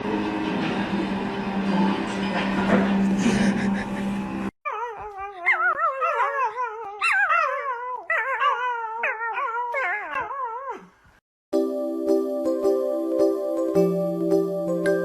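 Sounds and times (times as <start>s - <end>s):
dog howling: 4.6s - 10.9s.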